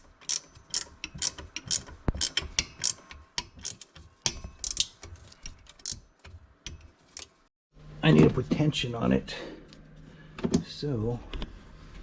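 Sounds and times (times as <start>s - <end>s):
ratchet tool clicking: 0.0s - 5.0s.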